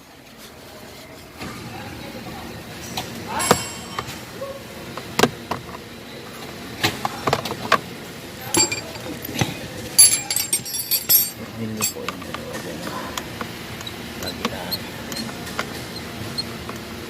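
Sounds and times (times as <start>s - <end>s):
hand tools and metal parts clinking: 8.4s - 13.3s.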